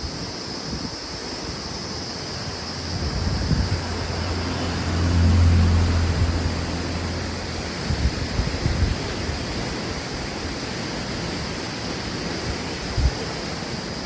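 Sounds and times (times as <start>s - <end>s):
river water rushing: 0.0s - 14.0s
wind buffeting microphone: 2.5s - 13.8s
low rumble: 2.8s - 9.1s.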